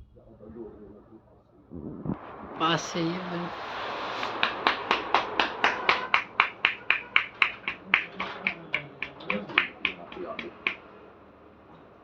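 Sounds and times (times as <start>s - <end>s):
hands slapping on head: 4.3s - 10.8s.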